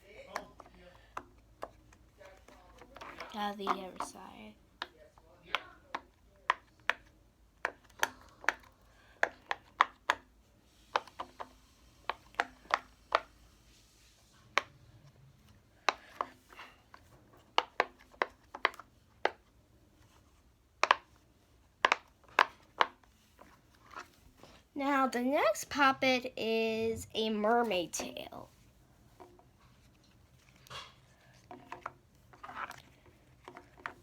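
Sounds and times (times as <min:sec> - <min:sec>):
small objects tapping and clicking: 0:00.1 - 0:10.3, 0:10.9 - 0:13.4, 0:15.8 - 0:19.4, 0:21.8 - 0:24.1.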